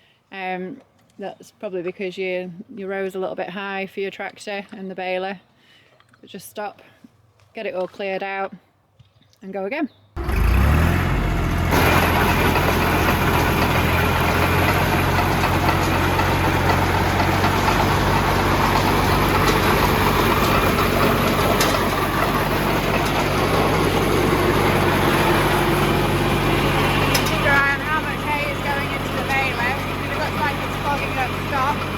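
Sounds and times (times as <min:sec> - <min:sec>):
tractor engine running: 0:10.2 - 0:31.9.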